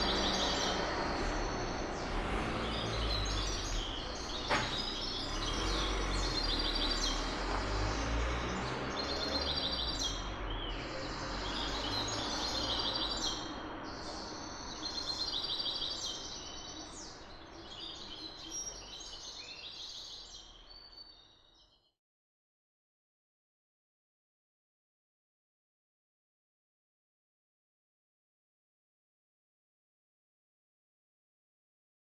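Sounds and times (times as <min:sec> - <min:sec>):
diesel bus rumble: 0:00.0 - 0:13.3
street noise: 0:00.0 - 0:20.9
small birds chirping: 0:00.0 - 0:21.9.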